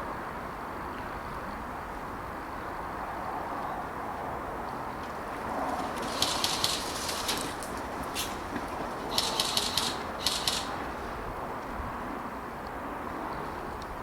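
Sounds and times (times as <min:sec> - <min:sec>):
steady background hiss: 0:04.8 - 0:11.7
airsoft guns firing rapid bursts: 0:06.1 - 0:07.2, 0:09.1 - 0:10.7.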